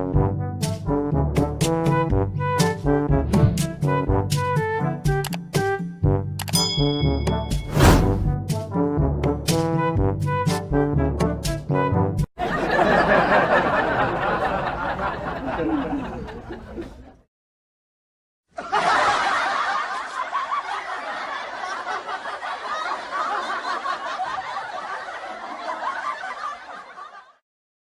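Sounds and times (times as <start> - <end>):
laughter: 12.4 - 17.2, 18.5 - 27.4.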